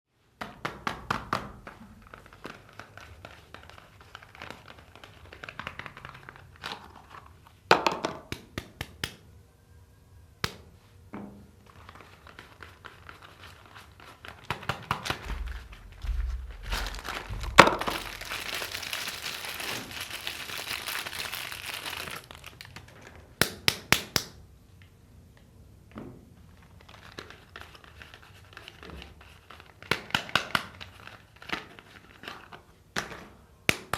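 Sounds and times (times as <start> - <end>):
wrappers crinkling and tearing: 1.8 - 7.4, 11.6 - 23.4, 26.5 - 32.6
thumps: 15.2 - 19.0.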